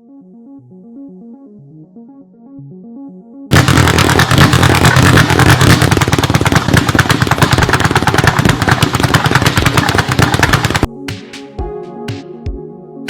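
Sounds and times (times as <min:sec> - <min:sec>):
rapid rattling clatter: 0:03.5 - 0:10.9.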